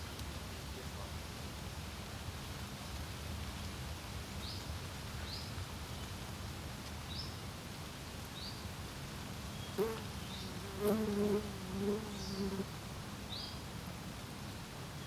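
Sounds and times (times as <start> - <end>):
insect buzzing: 9.6 - 13.5.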